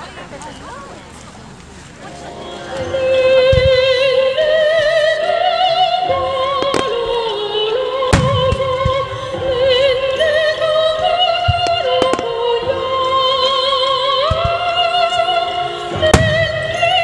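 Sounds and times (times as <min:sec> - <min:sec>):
firework bangs: 0:08.1 - 0:09.4, 0:16.0 - 0:17.0.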